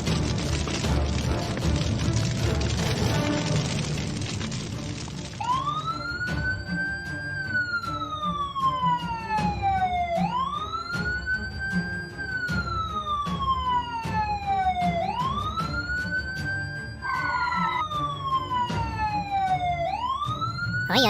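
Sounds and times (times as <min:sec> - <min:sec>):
emergency vehicle siren wailing: 0:05.4 - 0:21.0.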